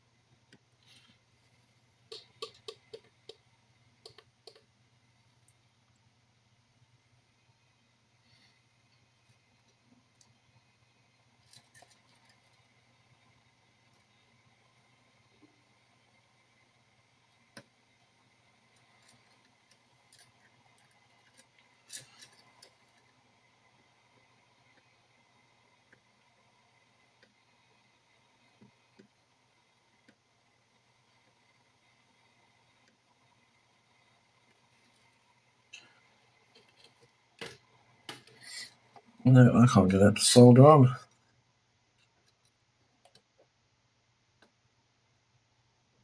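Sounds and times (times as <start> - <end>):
small clicks from handling tools: 2.1 - 3.4.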